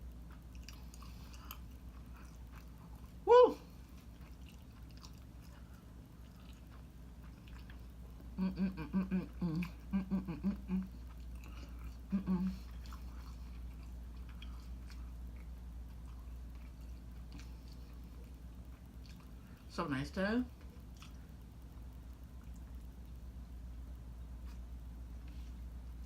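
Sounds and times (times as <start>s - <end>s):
steady low hum: 0.0s - 26.0s
woman making wordless syllables: 3.2s - 3.7s, 8.4s - 11.0s, 12.1s - 12.6s.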